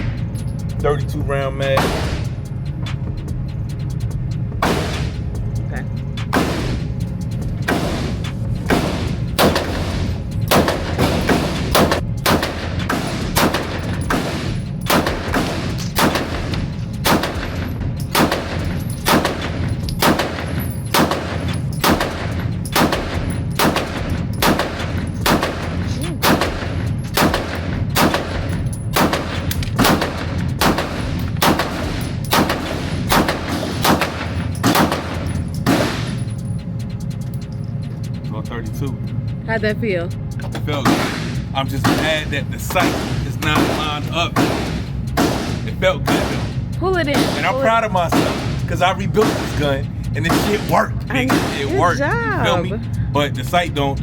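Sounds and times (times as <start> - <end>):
handgun shots: 6.4 - 6.8, 8.7 - 9.8, 10.5 - 36.2, 44.4 - 46.4.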